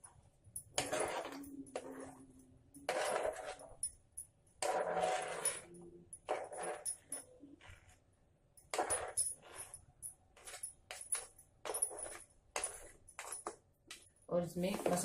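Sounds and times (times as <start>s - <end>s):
spoon scraping and clinking in bowl: 0.6s - 4.0s, 4.6s - 8.0s, 8.6s - 13.6s.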